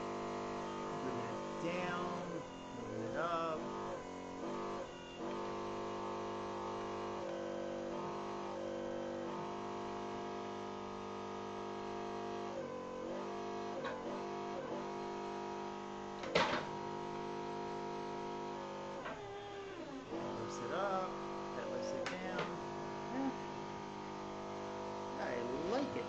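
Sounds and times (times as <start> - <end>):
hydraulic pump motor whining: 0.0 - 26.0.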